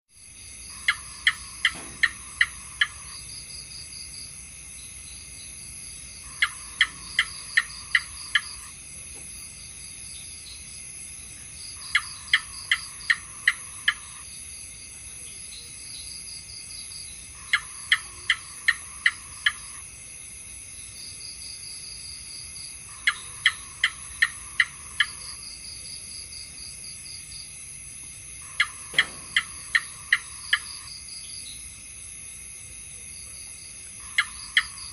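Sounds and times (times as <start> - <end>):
high-pitched background hiss: 0.2 - 34.9
gecko chirping: 0.7 - 3.7, 4.9 - 8.7, 11.7 - 14.3, 17.2 - 19.8, 22.9 - 25.6, 28.4 - 31.6, 34.0 - 34.9.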